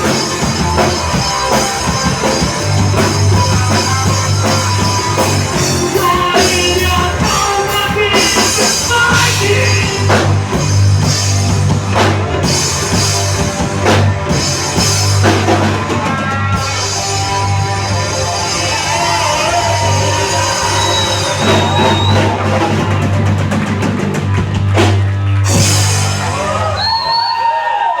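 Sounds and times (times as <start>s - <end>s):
rock band playing live: 0.0s - 27.8s.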